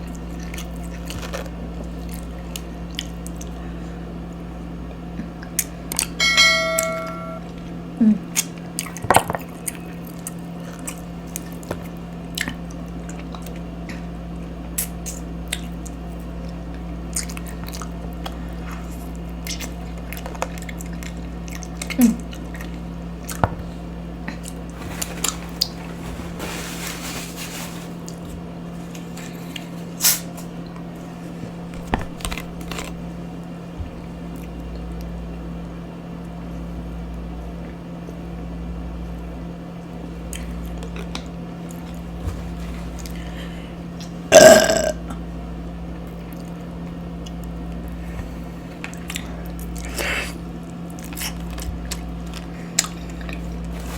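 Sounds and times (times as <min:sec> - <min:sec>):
low hum: 0:06.1 - 0:08.2.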